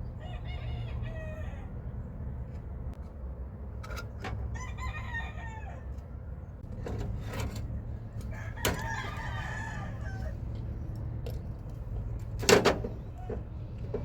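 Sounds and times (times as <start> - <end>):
rooster crowing: 0.1 - 1.9, 4.5 - 6.0, 8.2 - 10.5.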